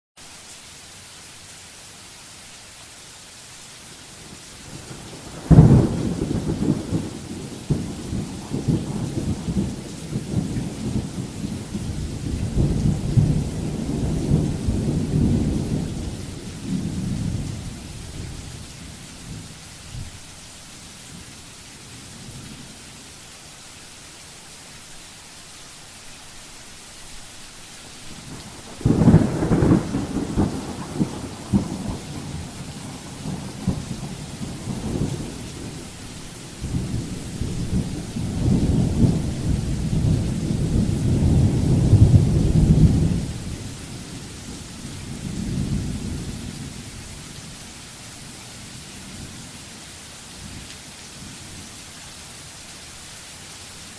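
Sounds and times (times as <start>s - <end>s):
steady rain: 0.2s - 53.9s
thunder crack and rumble: 28.2s - 35.9s, 36.6s - 43.5s.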